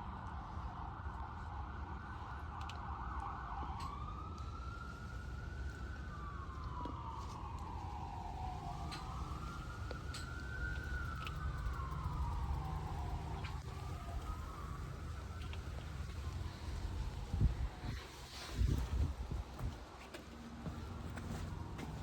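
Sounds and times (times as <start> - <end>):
emergency vehicle siren: 0.0 - 22.0
low steady rumble: 8.2 - 19.7.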